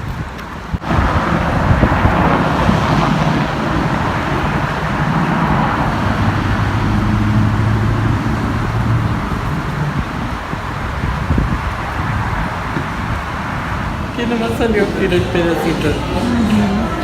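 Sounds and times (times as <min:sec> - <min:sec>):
road noise rushing: 0:00.0 - 0:17.0
low engine hum: 0:00.8 - 0:17.0.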